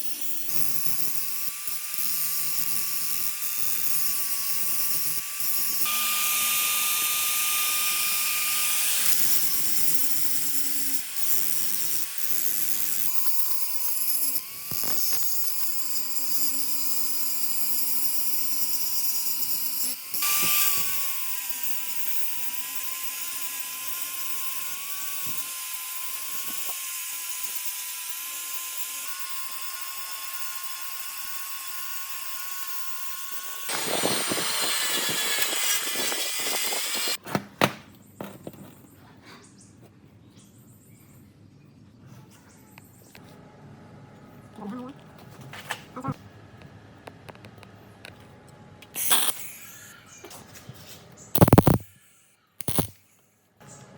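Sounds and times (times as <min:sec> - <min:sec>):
power tool high whine: 0:00.0 - 0:37.2, 0:48.9 - 0:50.2, 0:51.4 - 0:53.1.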